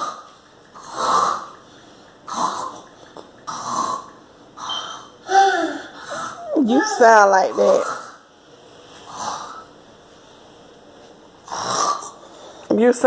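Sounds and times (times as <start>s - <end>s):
person imitating snoring: 0.9s - 1.5s, 5.3s - 6.6s, 11.5s - 12.2s.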